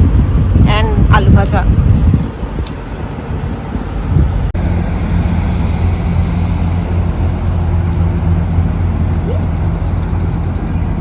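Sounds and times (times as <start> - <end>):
car running with low hum: 0.0 - 11.0
traffic noise: 0.0 - 11.0
wind: 0.0 - 11.0.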